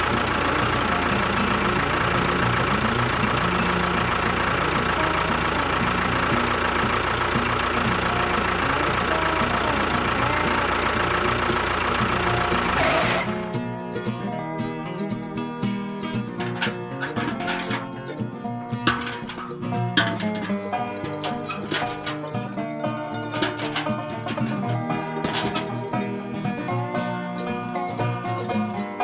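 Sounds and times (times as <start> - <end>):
small motor whining: 0.0 - 13.5.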